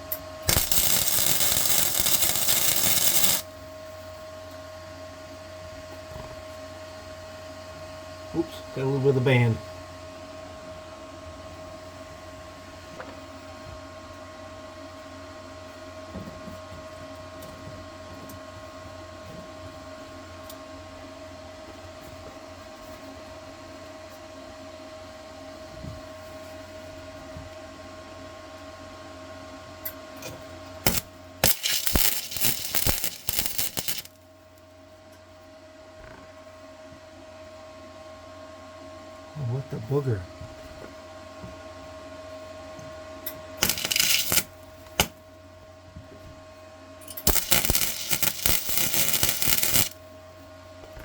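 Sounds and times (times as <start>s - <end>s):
electrical hum: 0.0s - 3.6s, 30.9s - 34.1s, 43.6s - 45.4s, 47.2s - 50.1s
welder crackling: 0.4s - 3.5s, 30.9s - 34.2s, 43.6s - 45.2s, 47.3s - 50.0s
sputtering clicks: 0.5s - 3.4s, 30.9s - 34.1s.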